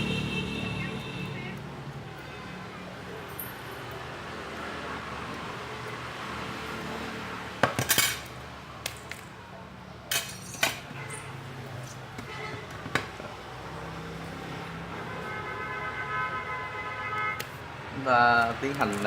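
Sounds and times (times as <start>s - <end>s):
metal tools clicking and clinking: 7.8s - 9.3s, 10.1s - 12.0s, 18.4s - 19.0s.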